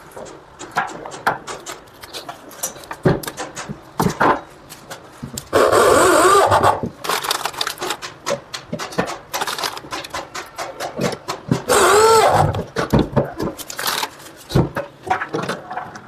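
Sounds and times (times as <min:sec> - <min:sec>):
handling clicks and knocks: 0:00.1 - 0:05.5, 0:06.8 - 0:11.7
drill driving screws into wood: 0:05.6 - 0:06.8, 0:11.7 - 0:12.6.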